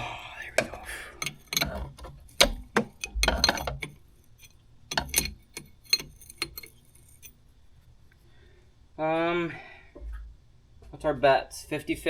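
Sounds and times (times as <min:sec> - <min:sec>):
wrench clinking on metal fittings: 0:01.1 - 0:07.4.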